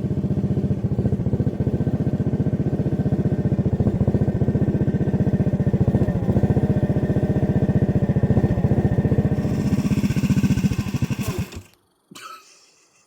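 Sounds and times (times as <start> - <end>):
small engine chugging: 0.0 - 11.8.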